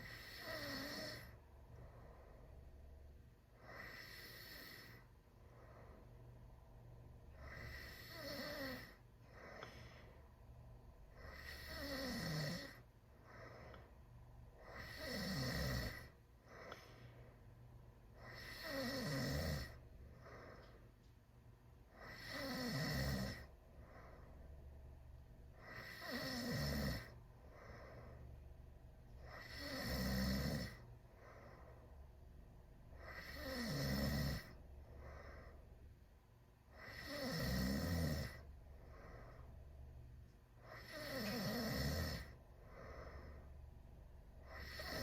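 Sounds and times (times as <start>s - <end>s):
person snoring loudly: 0.0s - 1.3s, 7.4s - 9.0s, 11.2s - 12.8s, 14.6s - 16.1s, 18.2s - 19.8s, 22.0s - 23.5s, 25.6s - 27.1s, 29.3s - 30.8s, 33.0s - 34.6s, 36.8s - 38.4s, 40.7s - 42.3s, 44.5s - 45.0s
soft breathing: 0.0s - 22.6s, 23.2s - 33.7s, 34.3s - 37.3s, 38.3s - 41.6s, 42.2s - 45.0s.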